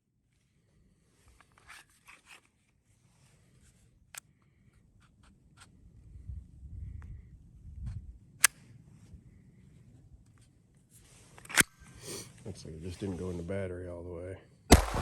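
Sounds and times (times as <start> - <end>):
rustling and scraping: 1.1 - 3.9, 10.3 - 13.5.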